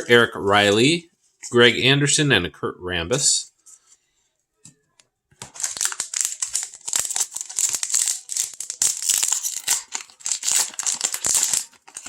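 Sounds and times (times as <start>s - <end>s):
plastic wrapper crinkling and tearing: 5.4s - 12.0s.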